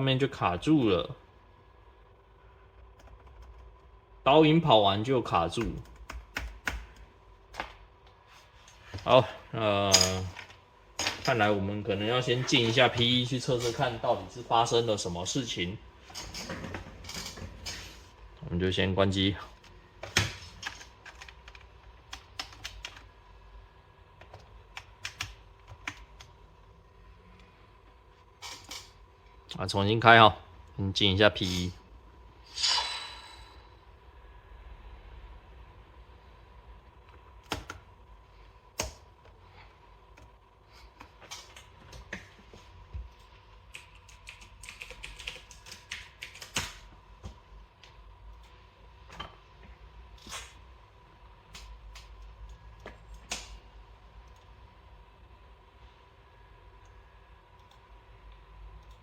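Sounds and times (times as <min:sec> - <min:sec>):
laptop keyboard clicks: 0:05.6 - 0:07.0.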